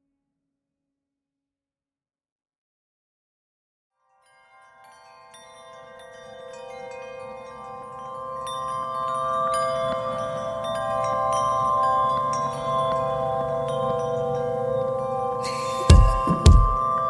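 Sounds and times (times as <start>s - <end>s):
chime-like tinkling music: 4.1s - 17.0s.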